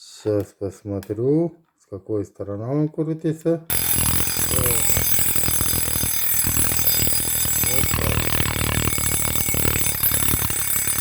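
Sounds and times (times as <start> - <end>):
wind-up alarm clock ringing: 3.7 - 11.0.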